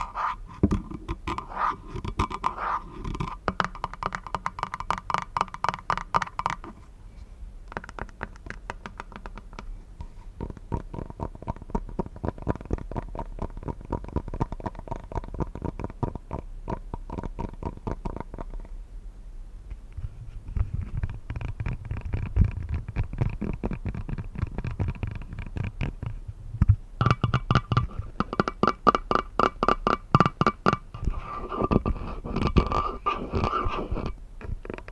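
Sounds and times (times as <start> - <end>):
tapping on glass cup: 27.0 - 30.8.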